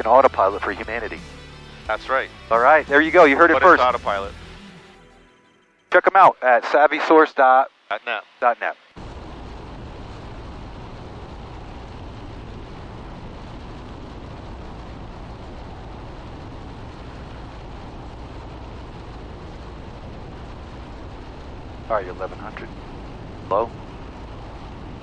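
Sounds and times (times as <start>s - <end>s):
airplane engine and propeller drone: 0.0s - 4.9s, 9.0s - 25.0s
airflow noise: 9.0s - 25.0s.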